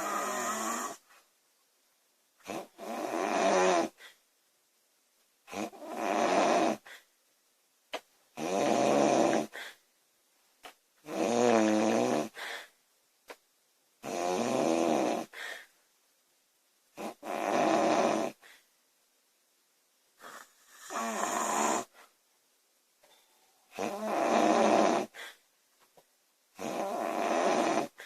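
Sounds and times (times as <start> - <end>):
woman snoring: 0.0 - 1.0, 2.4 - 4.0, 5.5 - 6.9, 8.4 - 9.8, 11.1 - 12.5, 14.0 - 15.4, 17.0 - 18.4, 20.2 - 21.9, 23.7 - 25.3, 26.6 - 28.0.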